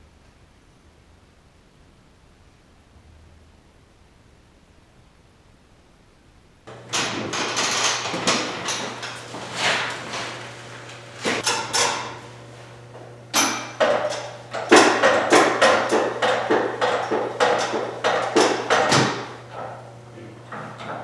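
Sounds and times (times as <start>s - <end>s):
knocks and clanks on metal: 6.8s - 10.3s, 11.2s - 12.2s, 13.3s - 19.8s.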